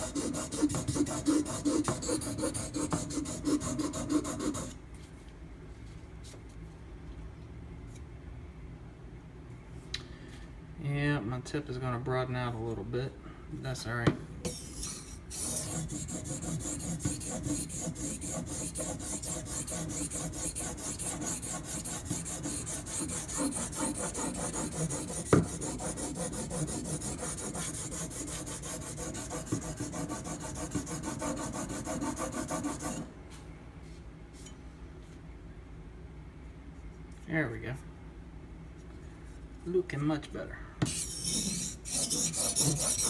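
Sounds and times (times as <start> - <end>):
knife scraping on sharpening stone: 40.9 - 43.0.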